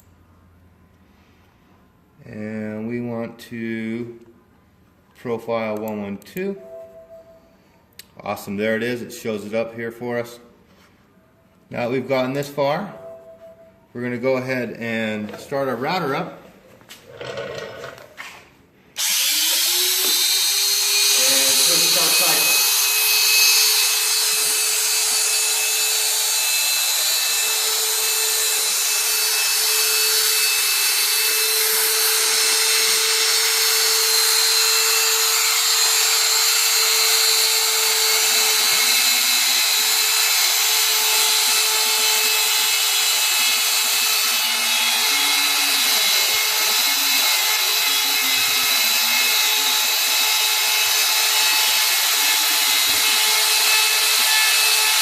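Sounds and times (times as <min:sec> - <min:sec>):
router spindle high whine: 0:19.0 - 0:55.0.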